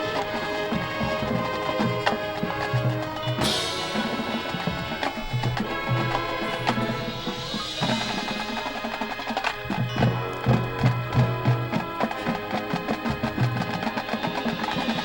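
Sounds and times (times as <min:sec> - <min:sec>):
marching band playing: 0:00.0 - 0:15.0
percussion knocking hits: 0:00.0 - 0:15.0
low pulsing note: 0:03.2 - 0:11.4.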